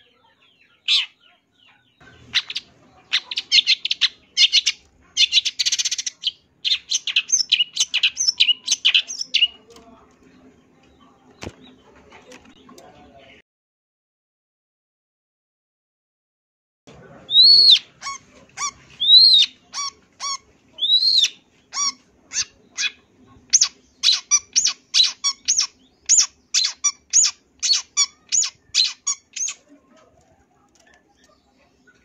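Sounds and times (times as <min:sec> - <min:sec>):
shrike singing: 0:02.0 - 0:09.7.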